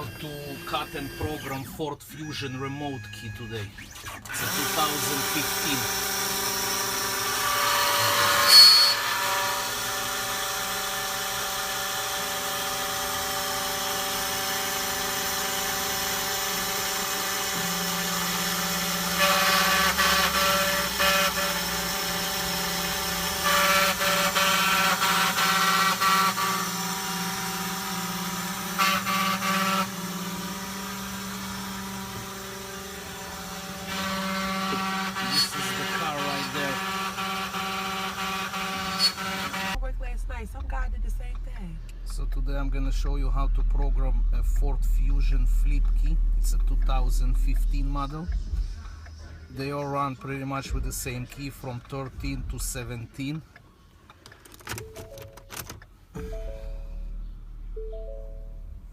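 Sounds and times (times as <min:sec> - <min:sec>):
key-cutting machine motor hum: 0:04.3 - 0:39.8.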